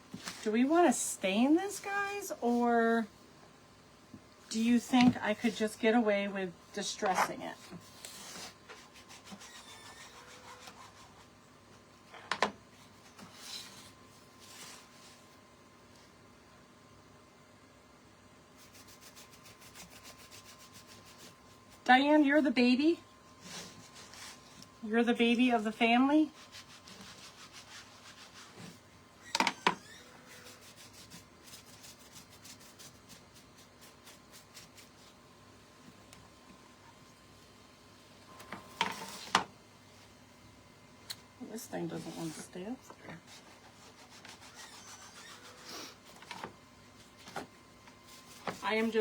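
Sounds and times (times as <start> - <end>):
sandpaper rubbing wood: 8.8 - 11.3, 43.3 - 45.9.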